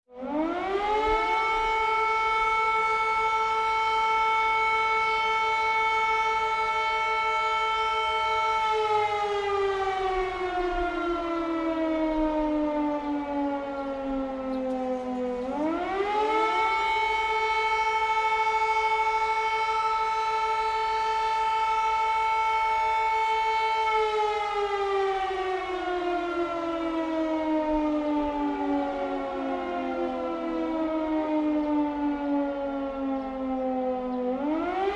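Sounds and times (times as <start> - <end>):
air raid siren wailing: 0.1 - 34.9.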